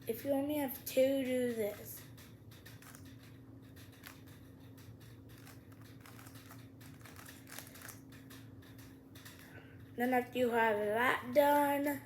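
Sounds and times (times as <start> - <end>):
puzzle cube plastic clicking: 2.7 - 3.2, 3.9 - 4.3, 5.3 - 8.5.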